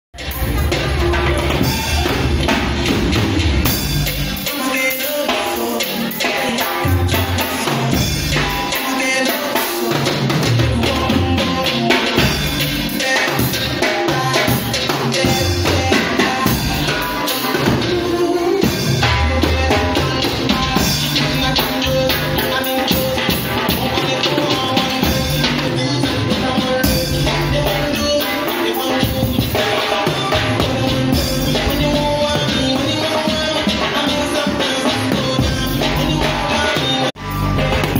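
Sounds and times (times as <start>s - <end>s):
backing music track: 0.2s - 37.9s
drum kit playing: 0.2s - 37.9s.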